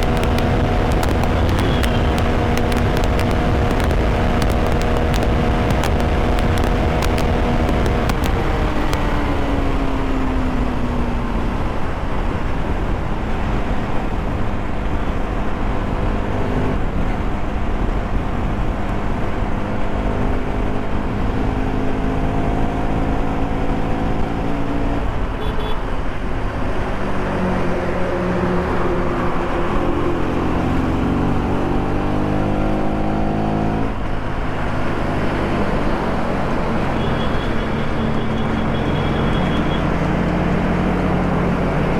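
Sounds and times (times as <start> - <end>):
motorcycle engine riding: 0.0 - 10.0
wind and road noise: 0.0 - 41.9.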